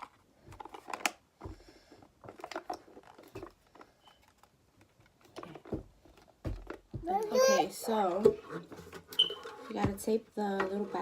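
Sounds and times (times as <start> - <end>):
plastic parts clicking and tapping: 0.0 - 7.3.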